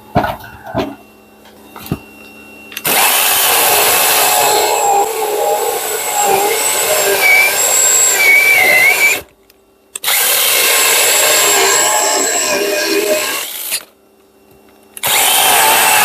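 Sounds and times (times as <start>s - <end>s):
mini chainsaw cutting wood: 2.8s - 9.3s, 10.0s - 13.9s, 15.0s - 16.0s.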